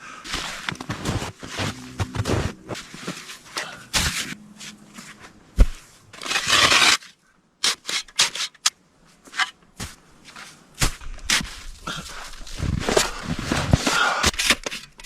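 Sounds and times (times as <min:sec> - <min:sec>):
footsteps crunching in snow: 0:00.2 - 0:06.0
scraping crunch in snow: 0:00.3 - 0:07.1.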